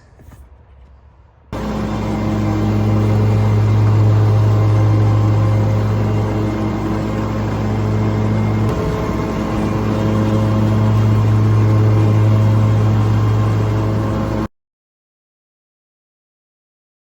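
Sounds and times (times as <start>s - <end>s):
vehicle engine hum: 1.5s - 14.5s
road noise: 1.6s - 14.5s.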